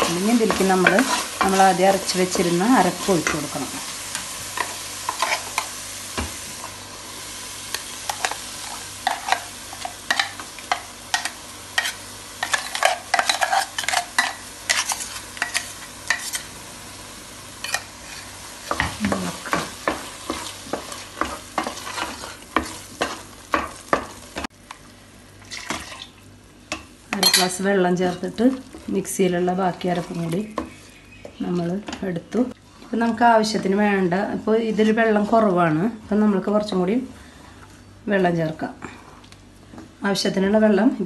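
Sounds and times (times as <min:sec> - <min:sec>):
spoon scraping a pan: 0:00.0 - 0:05.8, 0:07.7 - 0:16.5, 0:17.6 - 0:24.5
steady sizzle: 0:00.0 - 0:41.0.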